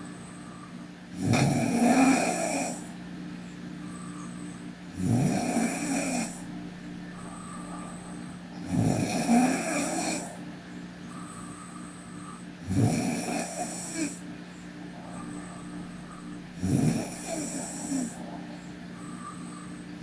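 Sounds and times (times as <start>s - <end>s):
quiet breathing: 0.0s - 20.0s
woman snoring: 1.1s - 3.0s, 4.9s - 10.4s, 12.6s - 14.2s, 15.0s - 18.4s.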